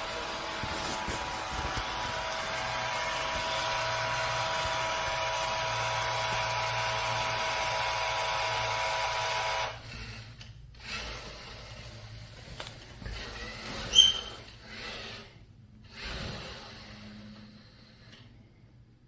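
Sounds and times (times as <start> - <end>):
robot vacuum motor running: 0.0 - 9.8.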